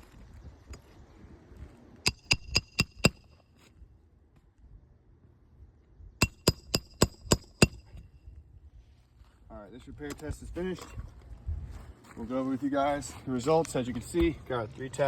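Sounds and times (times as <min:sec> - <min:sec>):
hammer striking metal: 0:02.1 - 0:03.2, 0:06.2 - 0:07.8.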